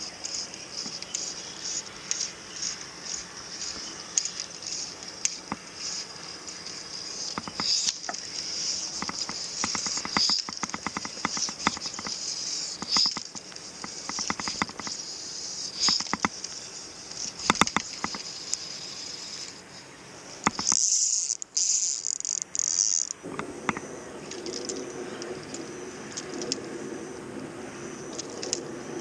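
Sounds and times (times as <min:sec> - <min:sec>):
insects trilling: 0:00.0 - 0:29.0
scattered clicks: 0:00.2 - 0:15.0, 0:15.8 - 0:18.8, 0:20.4 - 0:26.8, 0:28.1 - 0:28.6
low hum: 0:23.1 - 0:29.0.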